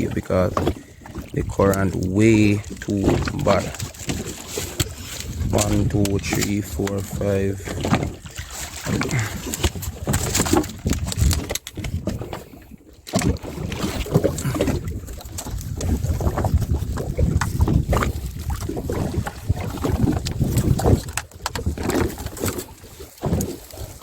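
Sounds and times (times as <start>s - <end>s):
sea noise: 0.0s - 24.0s
wind buffeting microphone: 4.8s - 12.6s, 13.2s - 22.6s.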